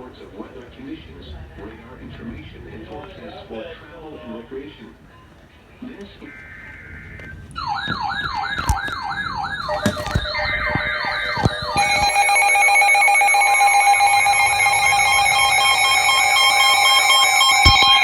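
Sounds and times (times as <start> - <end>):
electronic siren yelping: 6.6 - 18.0.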